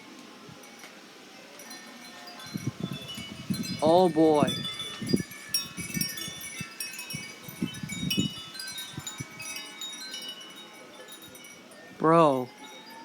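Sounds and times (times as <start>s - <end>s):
wind chimes ringing: 0.0s - 13.0s
gusty storm wind: 2.5s - 9.6s.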